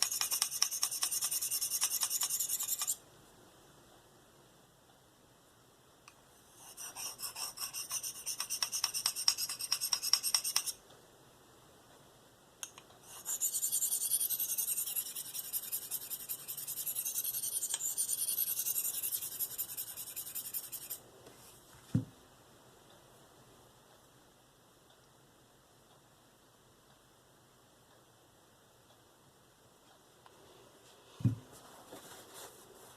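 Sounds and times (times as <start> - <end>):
blade scraping sharpening stone: 0.0 - 3.0, 6.6 - 10.8, 13.1 - 21.0.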